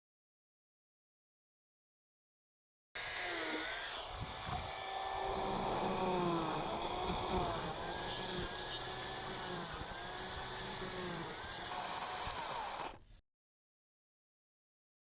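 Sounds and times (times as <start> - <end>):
chainsaw cutting wood: 3.0 - 13.0.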